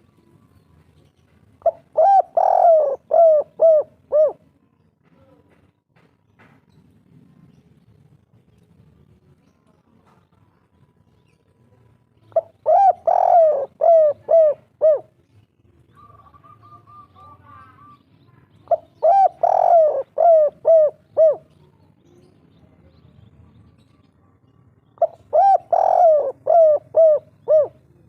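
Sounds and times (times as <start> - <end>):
dove cooing: 1.6 - 4.5, 12.3 - 15.2, 15.9 - 17.9, 18.7 - 21.6, 25.0 - 28.0.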